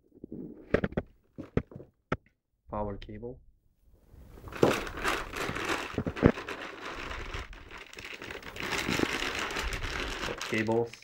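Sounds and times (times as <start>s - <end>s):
plastic packaging crinkling: 4.5s - 11.0s.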